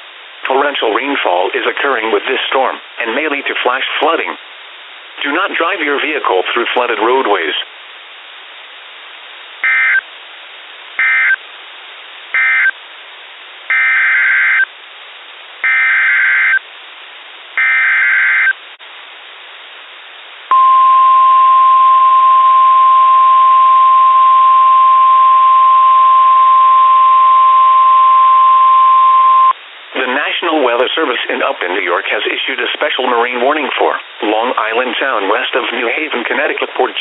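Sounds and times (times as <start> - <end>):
receiver static hiss: 0.0 - 37.0
data bursts: 9.6 - 10.0, 11.0 - 11.4, 12.4 - 12.8
steady alarm tone: 9.6 - 10.0, 11.0 - 11.4, 12.4 - 12.7, 13.7 - 14.7, 15.6 - 16.6, 17.6 - 18.6, 20.5 - 29.6.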